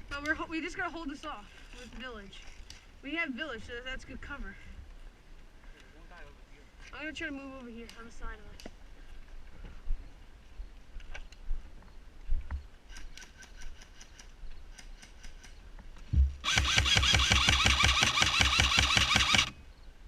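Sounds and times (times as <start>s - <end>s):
airsoft rifle full-auto fire: 16.4s - 19.6s.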